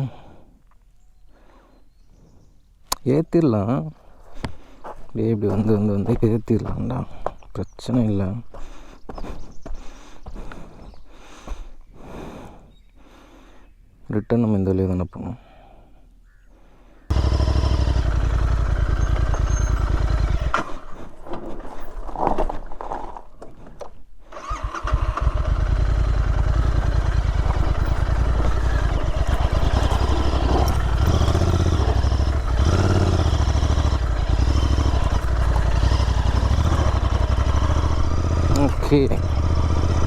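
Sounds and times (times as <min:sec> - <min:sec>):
motorcycle engine throbbing: 0:17.1 - 0:20.6, 0:24.9 - 0:40.0.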